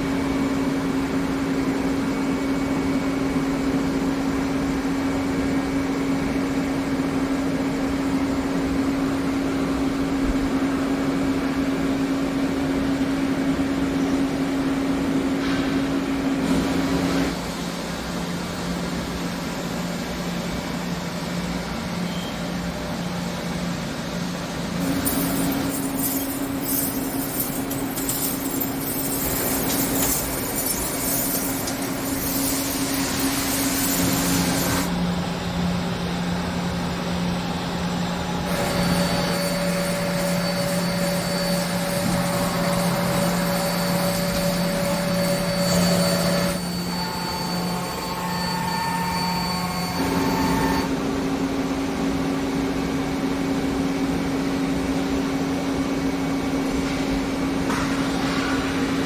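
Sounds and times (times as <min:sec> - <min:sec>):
machinery humming: 0:24.8 - 0:35.8.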